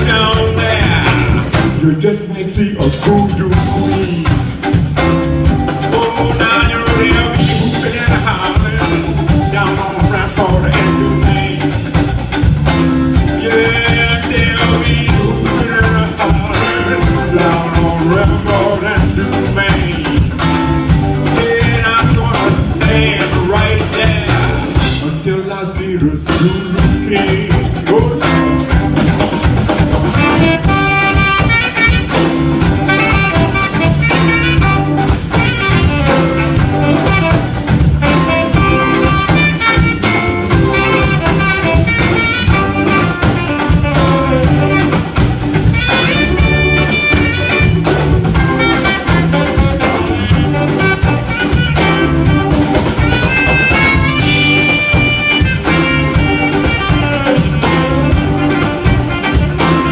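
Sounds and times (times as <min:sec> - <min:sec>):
blues band playing: 0:00.0 - 0:59.9
saxophone solo: 0:28.2 - 0:59.9.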